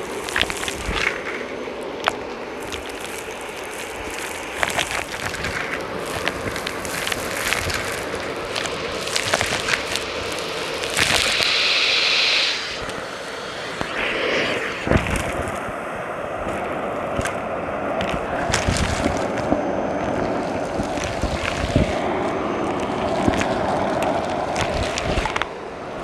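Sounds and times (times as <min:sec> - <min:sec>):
debris crackling in vacuum: 0:00.0 - 0:25.6
loud hiss: 0:07.2 - 0:16.2
vacuum cleaner running: 0:10.9 - 0:15.3.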